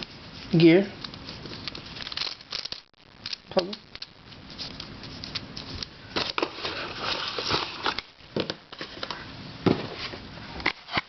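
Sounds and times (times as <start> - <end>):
rustling: 0.0 - 8.0.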